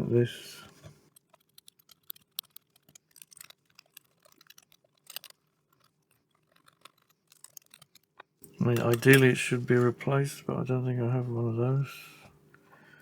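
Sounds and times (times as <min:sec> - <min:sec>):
scalpel blade scraping metal: 0:02.7 - 0:09.8.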